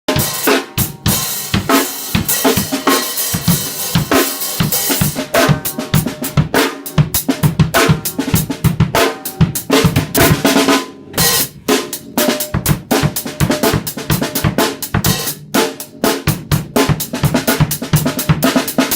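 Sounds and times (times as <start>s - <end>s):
drums played fast: 0.1s - 18.9s.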